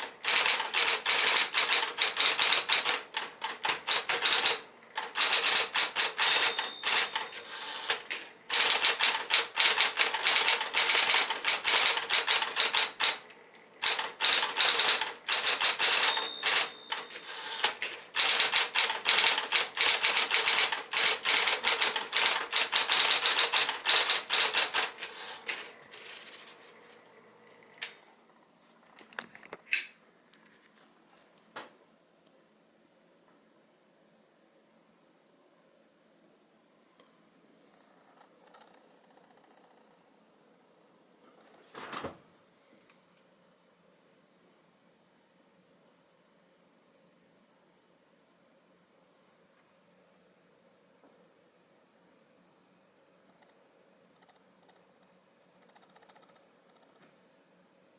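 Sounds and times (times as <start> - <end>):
typewriter key strikes: 0.0 - 13.2, 13.8 - 25.6
typewriter motor hum: 0.0 - 28.0
brief ringing tone: 6.3 - 7.4, 16.0 - 17.3.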